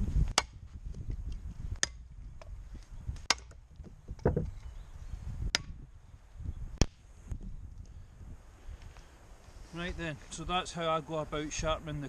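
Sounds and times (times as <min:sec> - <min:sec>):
shovel chopping into wood: 0:00.3 - 0:00.6, 0:03.2 - 0:03.6.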